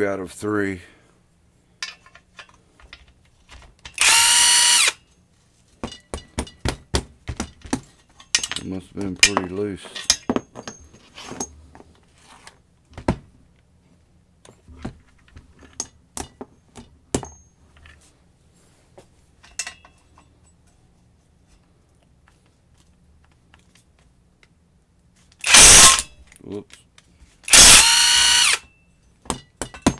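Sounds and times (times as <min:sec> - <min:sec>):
metal tools clinking: 0:01.8 - 0:03.2, 0:07.5 - 0:11.6, 0:19.4 - 0:20.9.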